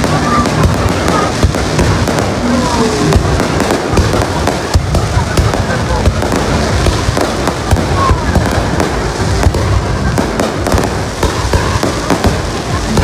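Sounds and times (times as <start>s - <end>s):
deep rumble: 0.0s - 13.0s
fireworks bangs and crackles: 0.0s - 13.0s.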